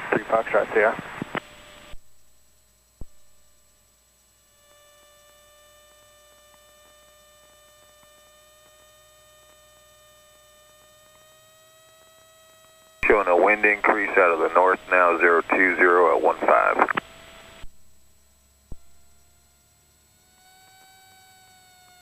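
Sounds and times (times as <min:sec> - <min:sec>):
faint electrical hum: 0:13.0 - 0:22.0.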